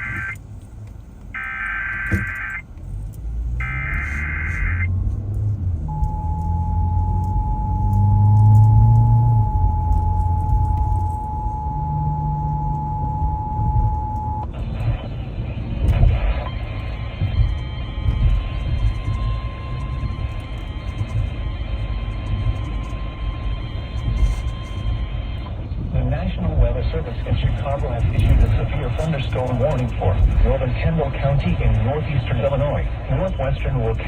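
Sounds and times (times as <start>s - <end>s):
two-tone attention signal: 0.0s - 0.4s, 1.4s - 2.6s, 3.6s - 4.9s, 5.9s - 14.5s
low rumble: 0.0s - 34.0s
rasping digital header bursts: 1.4s - 2.6s, 3.6s - 4.9s.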